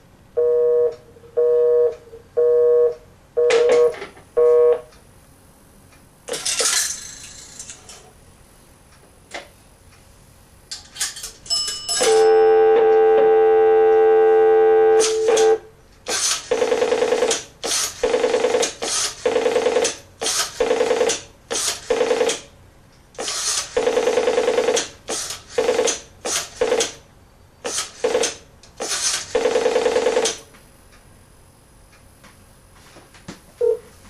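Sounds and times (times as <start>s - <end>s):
payphone rattling buzz: 11.5s - 13.3s, 15.0s - 15.6s.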